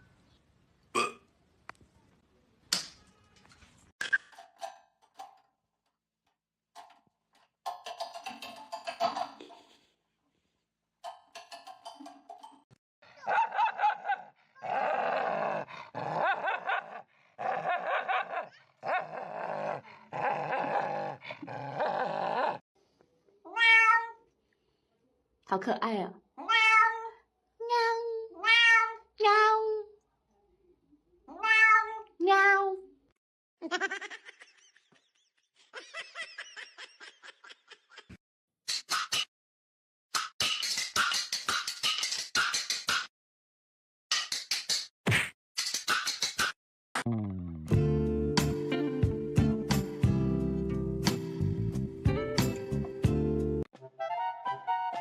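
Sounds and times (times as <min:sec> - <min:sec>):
person laughing: 0:13.2 - 0:14.3, 0:16.0 - 0:18.6, 0:33.6 - 0:38.2.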